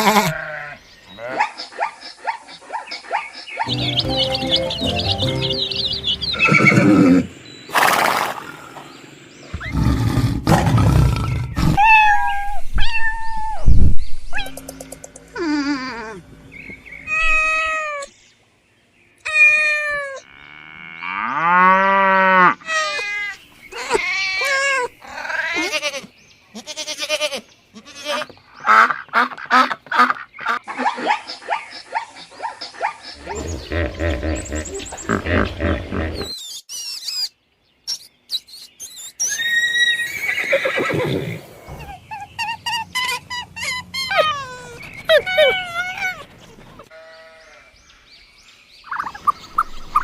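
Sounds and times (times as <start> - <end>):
pitched animal calls: 0.0 - 7.9, 9.5 - 18.1, 39.1 - 47.7
rough animal calls: 0.0 - 8.8, 9.5 - 18.1, 39.2 - 47.7.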